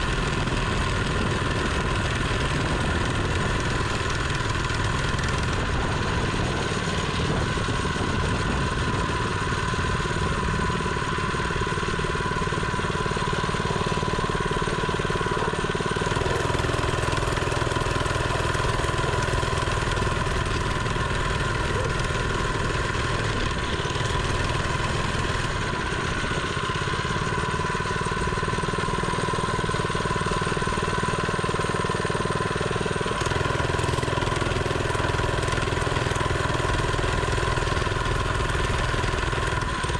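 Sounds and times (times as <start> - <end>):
small engine running: 0.0 - 39.9.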